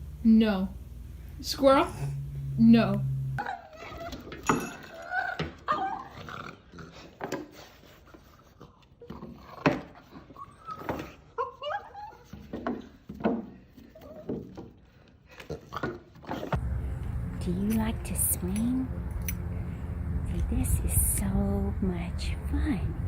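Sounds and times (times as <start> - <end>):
dog whining and grumbling: 1.8 - 6.7, 9.0 - 12.4.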